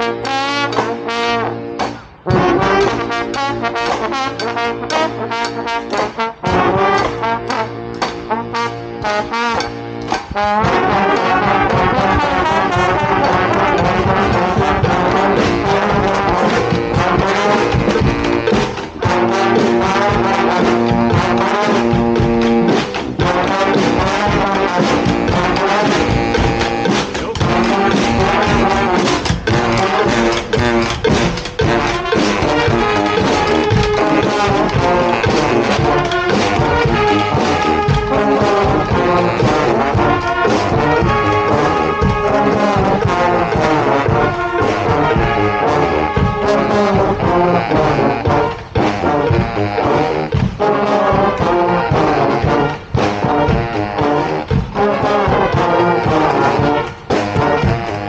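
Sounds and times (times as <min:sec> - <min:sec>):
brass band playing: 0:00.0 - 0:58.0
percussion strikes: 0:00.0 - 0:58.0.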